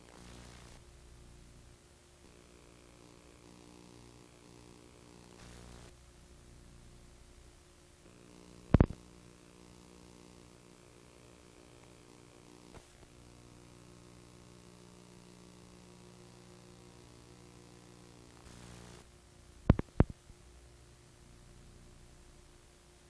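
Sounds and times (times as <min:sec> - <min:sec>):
low electrical hum: 0:00.0 - 0:23.0.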